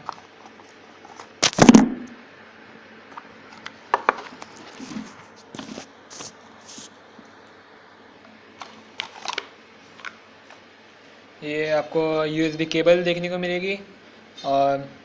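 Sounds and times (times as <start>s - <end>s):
packaging rustling: 8.6s - 10.2s.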